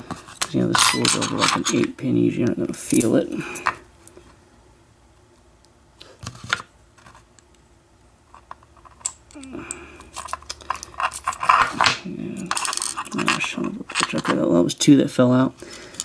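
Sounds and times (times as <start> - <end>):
lock pins rattling: 0.4 - 1.9, 8.3 - 14.5
small metal parts clicking: 0.8 - 1.9, 8.3 - 14.4.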